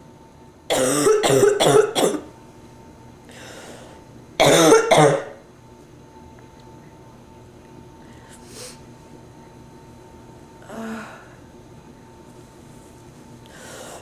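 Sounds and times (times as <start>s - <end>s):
woman coughing: 0.7s - 2.3s, 4.4s - 5.4s.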